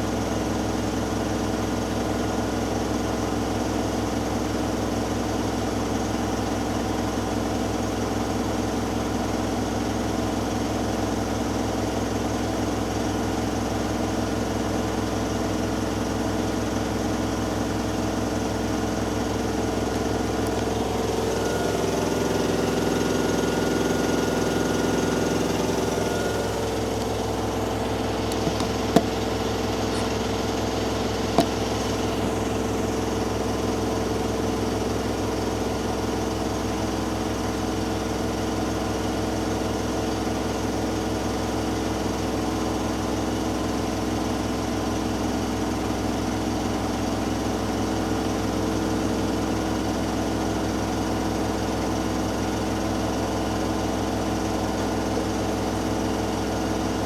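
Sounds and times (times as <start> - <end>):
washing machine drum spinning: 20.5 - 32.9.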